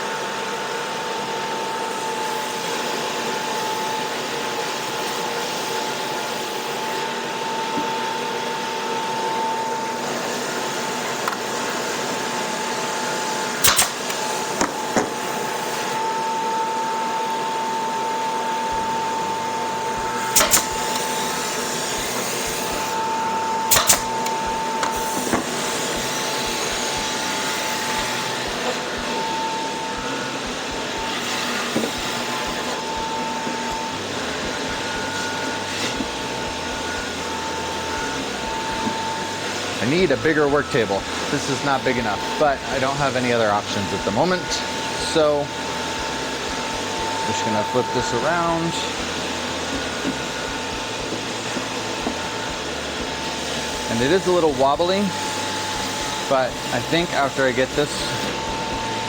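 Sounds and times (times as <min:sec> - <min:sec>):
power tool whirring: 0:00.0 - 0:59.0
nail gun snaps: 0:13.6 - 0:15.2, 0:20.2 - 0:21.4, 0:23.7 - 0:25.6.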